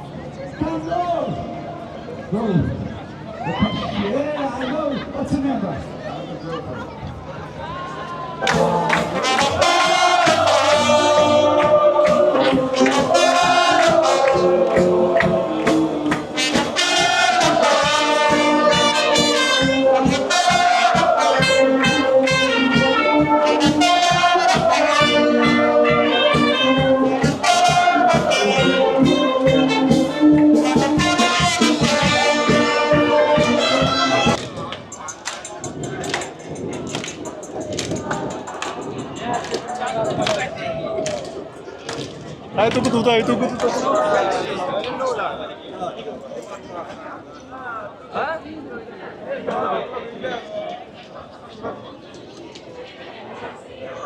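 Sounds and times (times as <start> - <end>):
music with melody over steady beat: 8.5 - 40.3.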